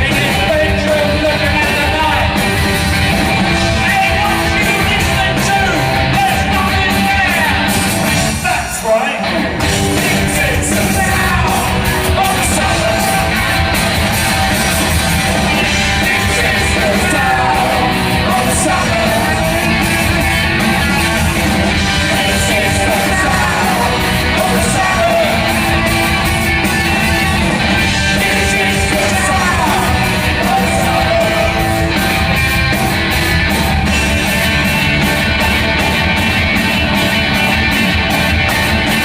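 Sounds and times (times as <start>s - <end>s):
live punk rock band: 0.0s - 39.0s
person singing: 8.4s - 32.2s.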